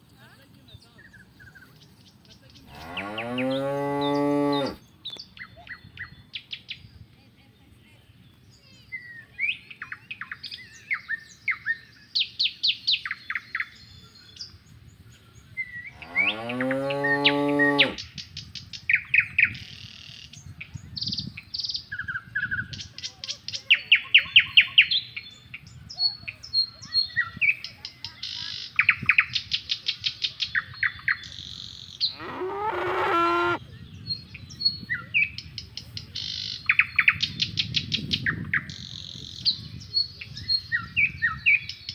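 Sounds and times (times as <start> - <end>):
songbirds chirping and trilling: 0.0 - 41.9
cattle mooing: 2.7 - 4.8, 16.0 - 18.0, 32.1 - 33.6.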